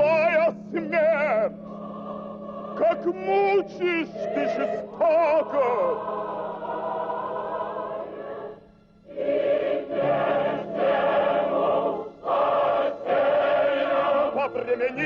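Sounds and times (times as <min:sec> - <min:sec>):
operatic choir singing: 0:00.0 - 0:15.0.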